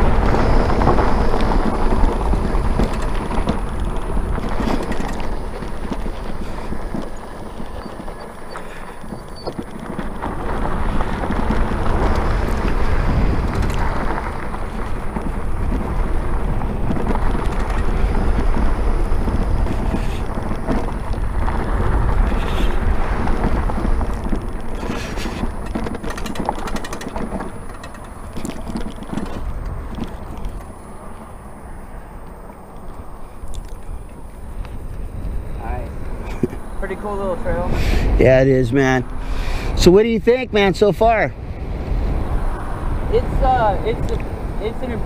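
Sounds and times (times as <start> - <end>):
bike tires rolling on dirt: 0.0 - 45.0
wind buffeting microphone: 0.0 - 45.0
knocks and rattles: 1.6 - 15.9, 16.8 - 18.6, 23.4 - 30.7.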